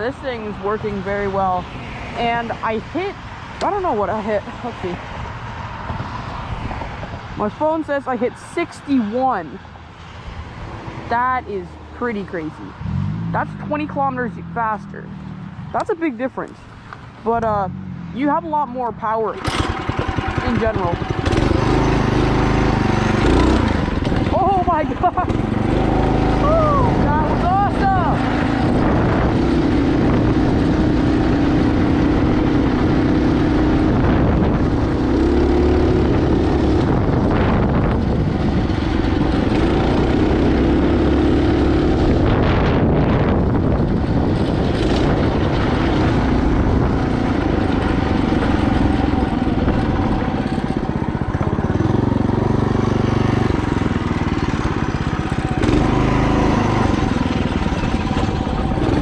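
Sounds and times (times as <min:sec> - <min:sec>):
mini bike engine revving: 0:19.4 - 0:59.0.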